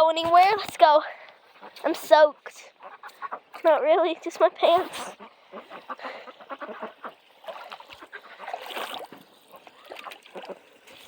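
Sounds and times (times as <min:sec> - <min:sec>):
ducks quacking: 0:01.4 - 0:08.9, 0:09.5 - 0:10.8.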